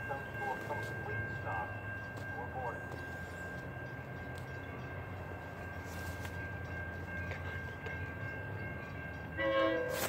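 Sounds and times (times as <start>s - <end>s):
train rumble: 0.0s - 10.0s
train horn: 9.4s - 10.0s.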